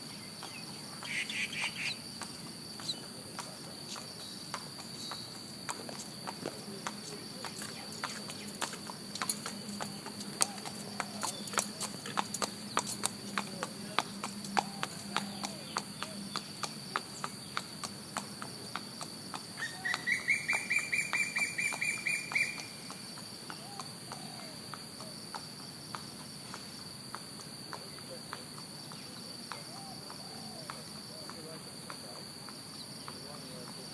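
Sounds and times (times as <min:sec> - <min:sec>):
high insect drone: 0:00.0 - 0:33.9
bird chattering call: 0:01.0 - 0:02.0, 0:19.6 - 0:22.6.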